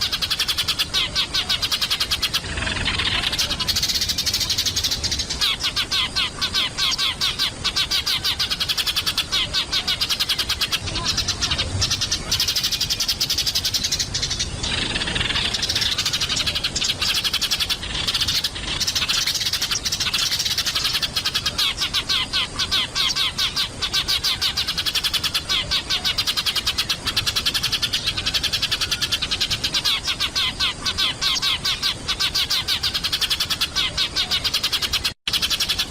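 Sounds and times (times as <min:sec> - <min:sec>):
sparrows chirping: 0:00.0 - 0:35.9.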